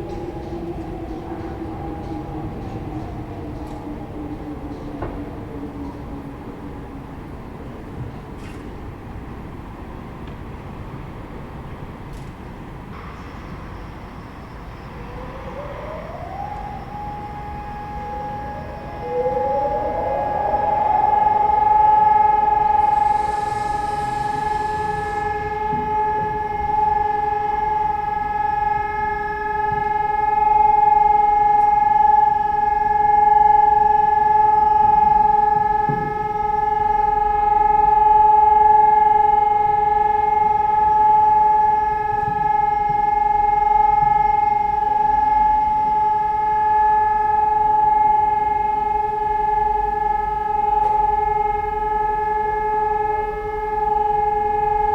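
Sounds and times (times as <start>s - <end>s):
civil defence siren steady tone: 0.0s - 11.2s, 13.3s - 54.9s.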